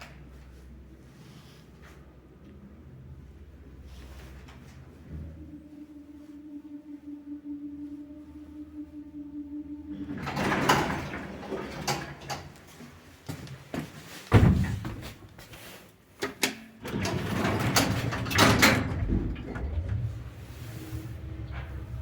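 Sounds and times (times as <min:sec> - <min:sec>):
lift doors sliding and clattering: 0:09.9 - 0:22.0.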